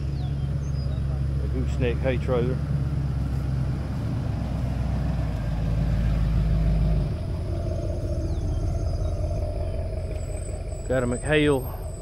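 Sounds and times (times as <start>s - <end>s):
diesel tractor engine running: 0.0s - 12.0s.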